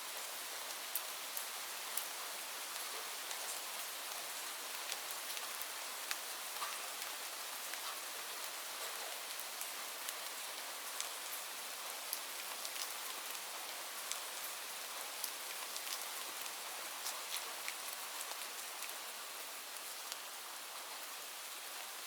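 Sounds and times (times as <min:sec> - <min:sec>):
steady rainfall: 0:00.0 - 0:22.0
raindrops splattering on surfaces: 0:02.7 - 0:20.3.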